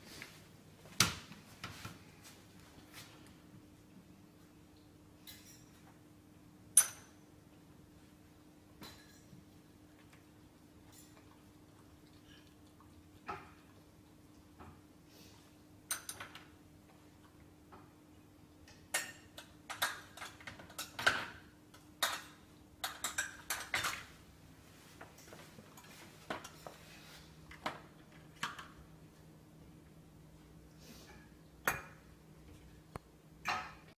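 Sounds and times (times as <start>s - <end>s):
dishes and cutlery clinking: 5.2s - 5.9s, 8.8s - 9.5s, 10.8s - 11.4s, 15.9s - 16.5s, 18.7s - 24.2s, 33.4s - 33.9s.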